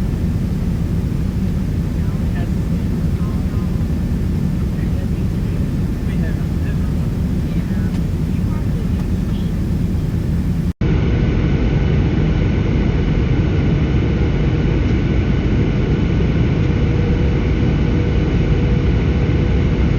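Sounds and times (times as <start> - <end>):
faint steady tones: 0.0 - 10.8
airliner engine and airflow noise: 0.0 - 19.9.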